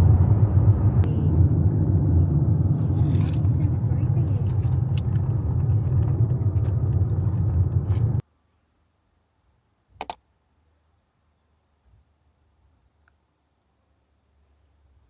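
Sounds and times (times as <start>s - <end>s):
vehicle rumbling: 0.0s - 8.2s
sharp double click: 10.0s - 10.2s.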